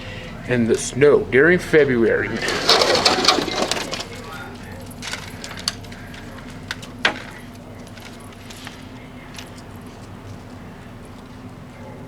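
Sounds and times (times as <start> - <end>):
steady low hum: 0.0 - 12.0
metallic clinks and jingles: 2.3 - 11.6.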